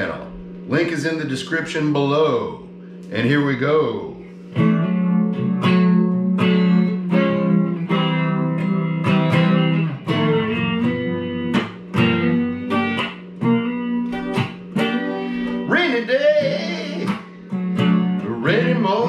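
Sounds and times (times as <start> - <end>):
guitar strumming chords: 4.3 - 19.0.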